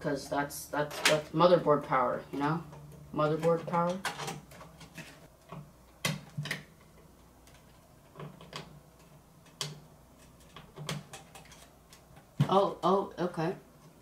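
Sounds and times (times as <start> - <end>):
plastic clicks and knocks: 10.4 - 12.5.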